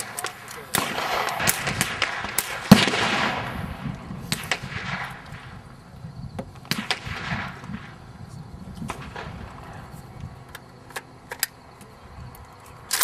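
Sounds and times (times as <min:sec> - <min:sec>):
rifle gunshots with echo: 0:00.0 - 0:05.6, 0:06.6 - 0:08.0.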